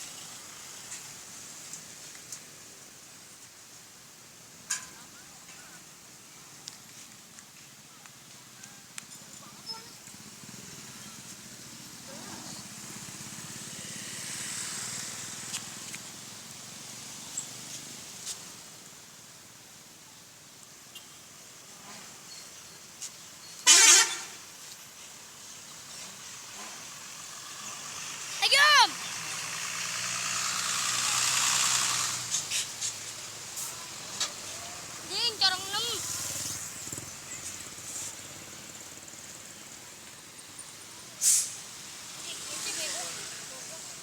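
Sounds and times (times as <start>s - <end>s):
vehicle passing by: 10.2s - 18.1s, 26.0s - 39.8s, 40.6s - 44.0s.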